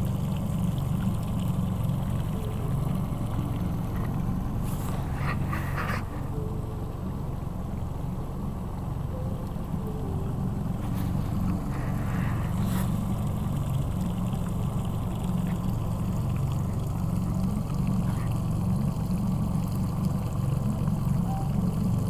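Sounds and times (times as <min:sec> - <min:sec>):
engine running: 0:00.0 - 0:22.0.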